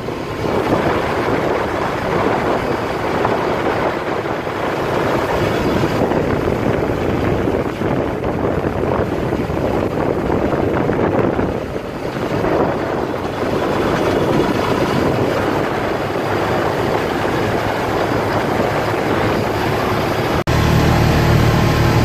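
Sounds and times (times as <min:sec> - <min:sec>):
wind rush on microphone: 0:00.0 - 0:20.6
low engine hum: 0:00.0 - 0:22.0
utv engine running: 0:00.0 - 0:22.0.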